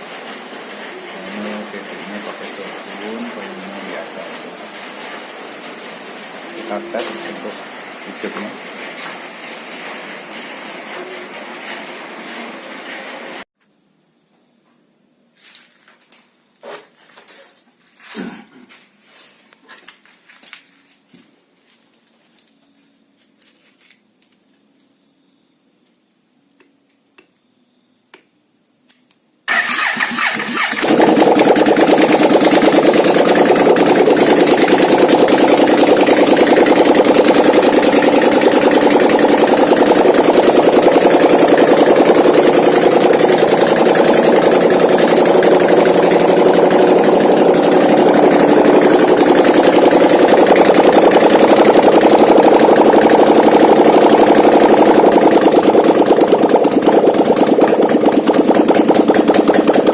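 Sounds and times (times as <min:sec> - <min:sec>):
atv engine starting and running: 0:00.0 - 0:13.5, 0:29.5 - 0:59.9.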